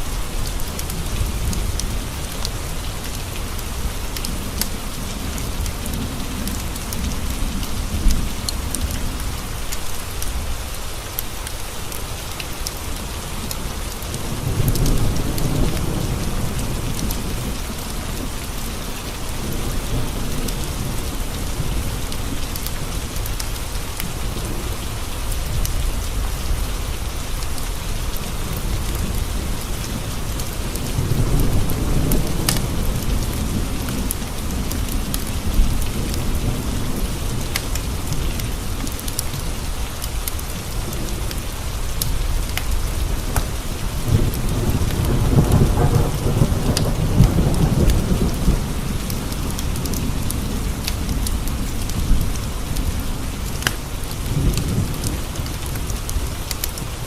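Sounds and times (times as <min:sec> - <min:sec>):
rain tapping on window glass: 0:00.4 - 0:57.0
low thunder rolls: 0:42.2 - 0:53.6.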